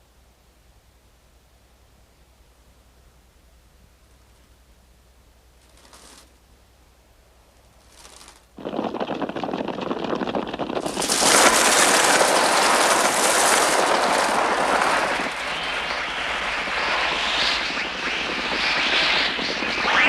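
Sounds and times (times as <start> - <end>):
flock of crows taking off: 10.9 - 17.1.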